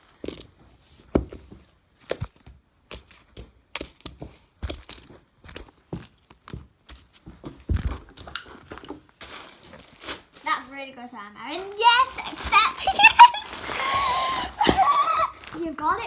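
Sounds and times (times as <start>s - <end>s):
fidget toys clicking and rustling: 11.4s - 16.0s.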